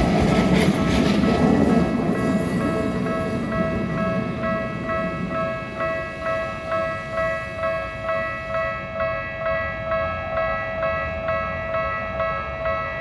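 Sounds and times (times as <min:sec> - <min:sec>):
passing train rumble: 0:00.0 - 0:13.0
railroad crossing bell ringing: 0:00.7 - 0:13.0.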